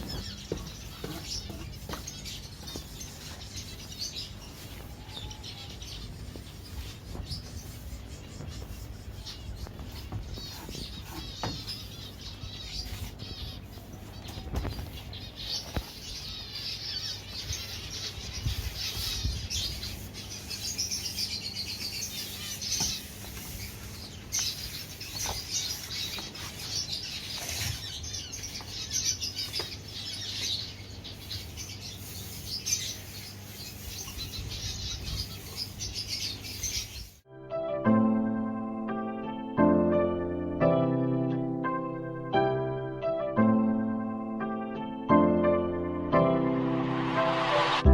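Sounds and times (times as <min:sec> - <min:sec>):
cage birds chirping: 0:00.0 - 0:37.3.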